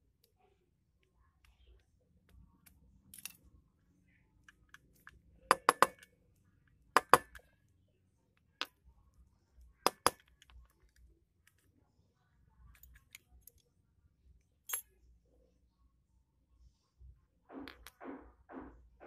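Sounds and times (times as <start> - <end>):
small steel parts clinking: 2.7 - 3.5, 14.7 - 14.9.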